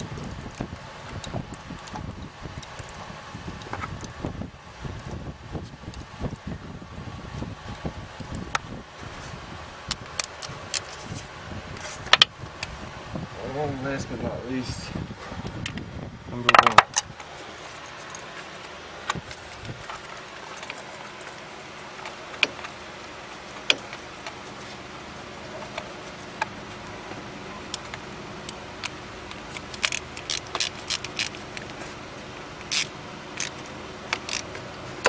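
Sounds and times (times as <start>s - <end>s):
ratchet clicking: 29.6s - 31.6s, 32.6s - 34.5s.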